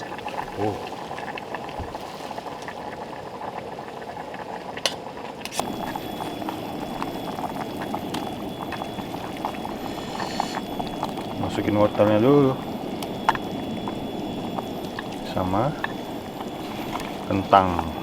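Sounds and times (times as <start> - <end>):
broth bubbling at a boil: 0.0 - 18.0
faint steady high tone: 5.6 - 18.0.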